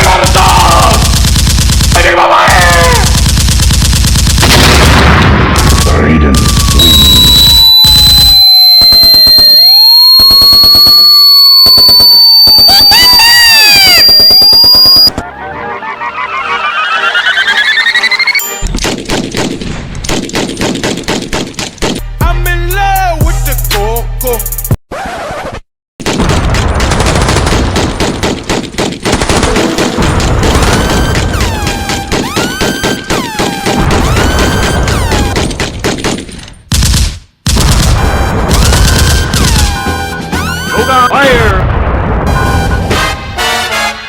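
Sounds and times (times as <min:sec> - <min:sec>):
rapid automatic gunfire: 0:00.0 - 0:07.4, 0:26.0 - 0:39.7
siren-like wail: 0:05.8 - 0:18.4
piercing high electronic tone: 0:06.6 - 0:15.1, 0:15.8 - 0:18.6
falling electronic chirps: 0:06.6 - 0:18.6
falling whistling tones: 0:15.7 - 0:18.6.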